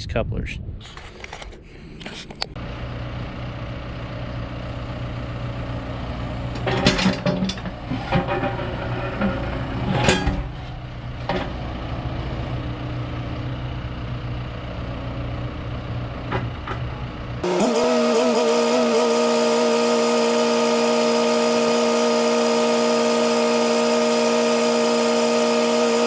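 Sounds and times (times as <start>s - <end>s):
digging machine engine idling: 2.6s - 26.0s
metal clanks and clatters: 6.5s - 11.6s.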